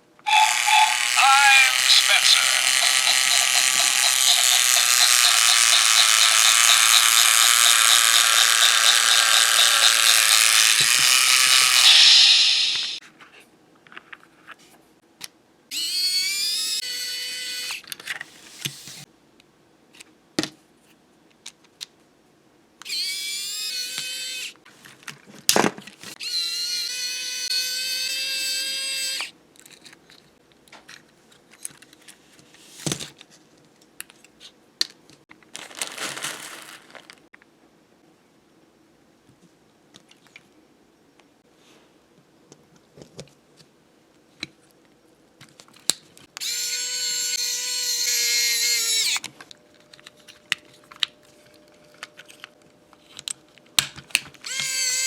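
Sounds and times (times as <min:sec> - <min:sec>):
toy motor grinding whirr: 0:00.3 - 0:13.0, 0:15.7 - 0:19.1, 0:22.8 - 0:24.6, 0:26.1 - 0:29.3, 0:46.4 - 0:49.3, 0:54.4 - 0:55.0.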